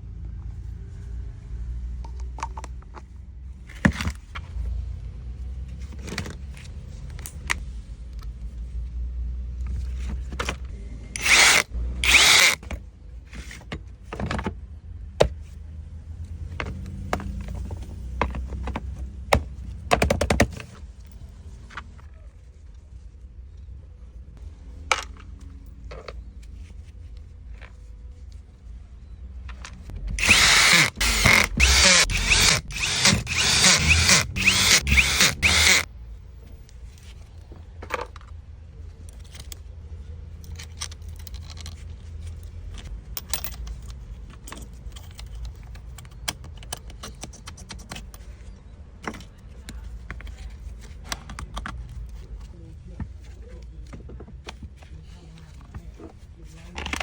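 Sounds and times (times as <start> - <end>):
rotary hammer bursts: 11.2 - 12.6, 30.2 - 35.9
handling clicks and knocks: 12.1 - 15.6, 16.2 - 22.1, 37.3 - 57.0.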